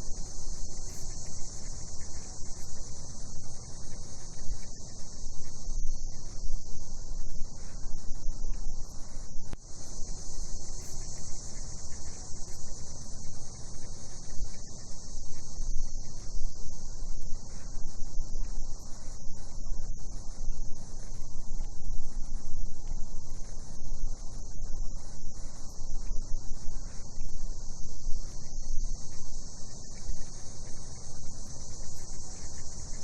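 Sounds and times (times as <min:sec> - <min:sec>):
cicadas buzzing: 0:00.0 - 0:06.4, 0:09.7 - 0:16.2, 0:26.4 - 0:33.0.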